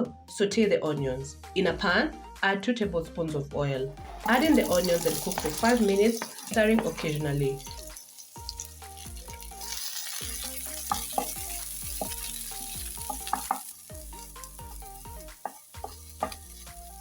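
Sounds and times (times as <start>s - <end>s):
light background music: 0.0s - 17.0s
food sizzling in hot oil: 3.9s - 17.0s.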